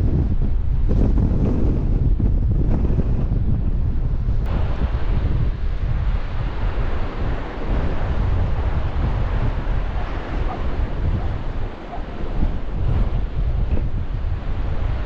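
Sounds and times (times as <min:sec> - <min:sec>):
wind buffeting microphone: 0:00.0 - 0:15.0
surf breaking on beach: 0:04.5 - 0:15.0.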